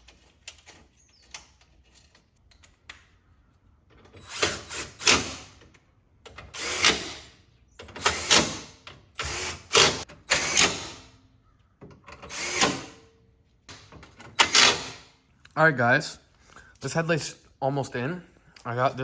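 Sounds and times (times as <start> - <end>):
power drill driving screws: 4.2 - 5.5, 6.5 - 7.4, 8.0 - 11.1, 12.2 - 13.0, 14.4 - 15.0.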